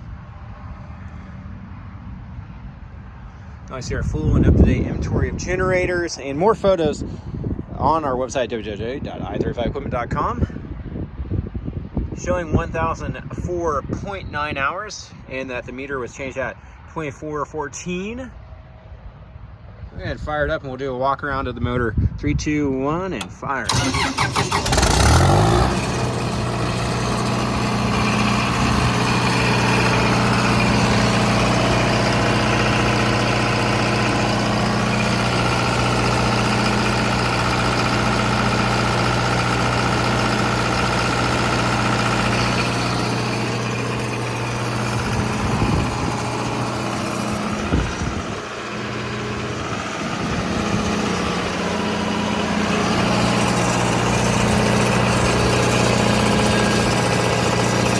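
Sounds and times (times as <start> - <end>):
diesel generator engine running: 23.2 - 57.9.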